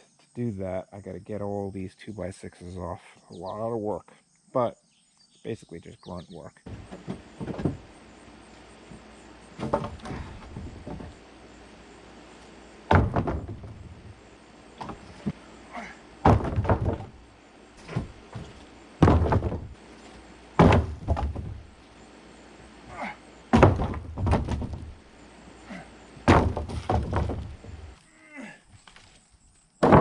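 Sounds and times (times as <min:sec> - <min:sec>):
heavy wooden thuds and knocks: 0:06.7 - 0:07.9, 0:09.6 - 0:11.2, 0:12.8 - 0:14.2, 0:14.8 - 0:21.8, 0:23.0 - 0:25.0, 0:26.2 - 0:28.0, 0:29.8 - 0:30.0.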